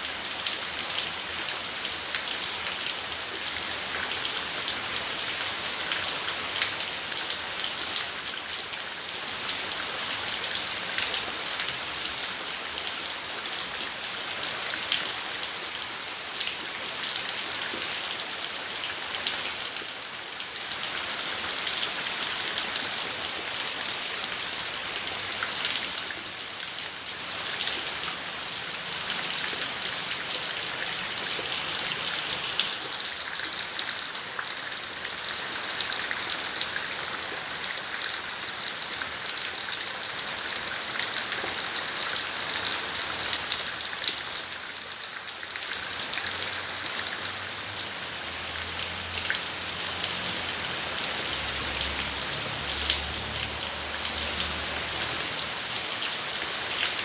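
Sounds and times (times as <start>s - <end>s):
rain falling on leaves: 0.0s - 57.0s.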